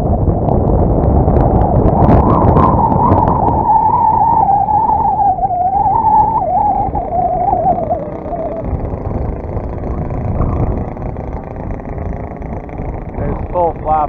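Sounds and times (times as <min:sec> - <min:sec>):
wind buffeting microphone: 0:00.0 - 0:14.0
model plane engine running: 0:06.3 - 0:14.0.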